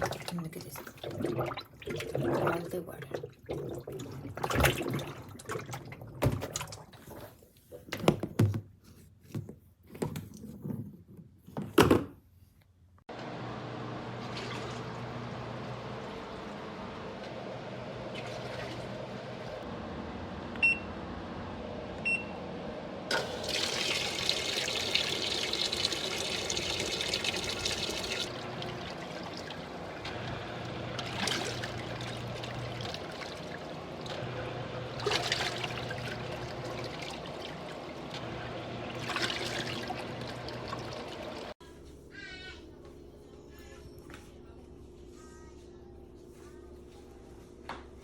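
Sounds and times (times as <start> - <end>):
washing machine motor humming: 0.0 - 7.2, 13.1 - 41.6
water sloshing in washing machine: 0.0 - 7.6, 14.2 - 19.7, 23.1 - 41.6
water rushing: 23.1 - 41.6.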